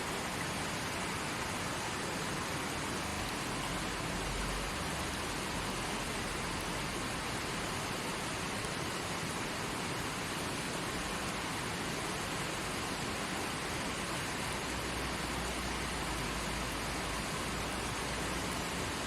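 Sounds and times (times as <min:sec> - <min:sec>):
river rushing over rocks: 0:00.0 - 0:19.0.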